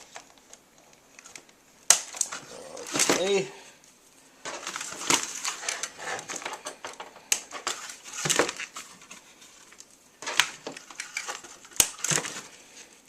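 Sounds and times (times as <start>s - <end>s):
plastic packaging crinkling: 4.5s - 13.0s.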